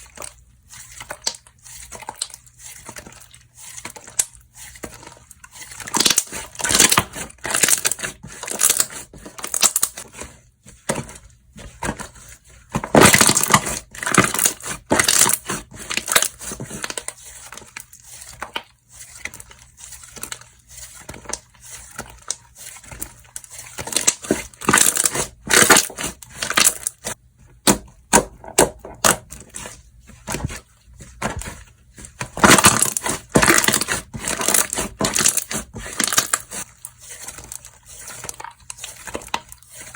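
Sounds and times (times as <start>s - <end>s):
slime squelching and popping: 21.0s - 39.6s.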